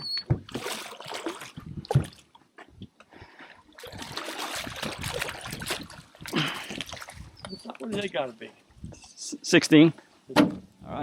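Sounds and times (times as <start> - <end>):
water splashing and dripping: 0.4 - 2.4, 3.3 - 8.2.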